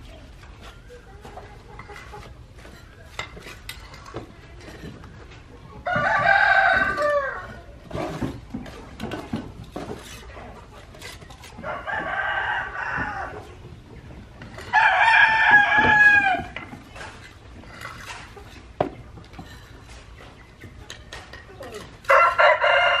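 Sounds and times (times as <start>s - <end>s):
rooster crowing: 5.8s - 7.5s, 11.6s - 13.4s, 14.7s - 16.6s, 22.1s - 23.0s.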